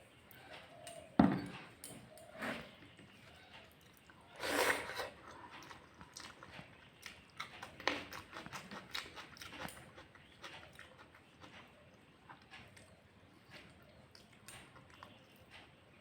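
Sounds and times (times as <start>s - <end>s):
wet chewing: 3.6s - 15.7s.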